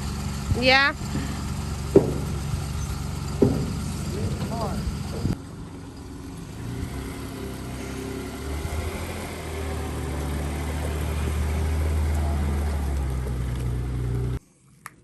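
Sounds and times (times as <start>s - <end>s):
vehicle engine running at low revs: 0.0s - 14.4s.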